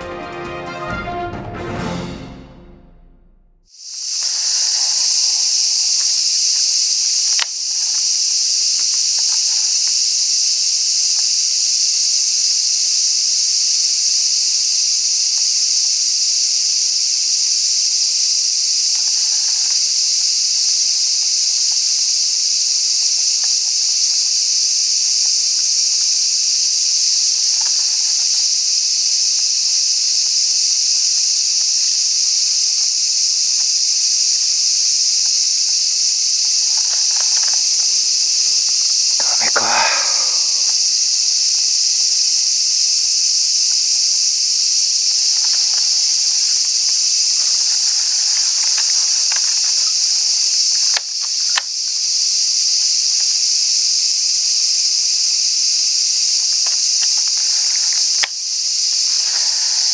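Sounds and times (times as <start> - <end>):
insects shrilling: 3.7 - 59.9.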